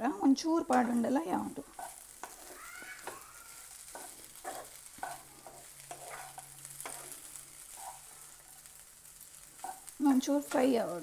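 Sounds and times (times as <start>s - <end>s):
vegetables sizzling in oil: 0.0s - 11.0s
spatula scraping a pan: 0.6s - 11.0s.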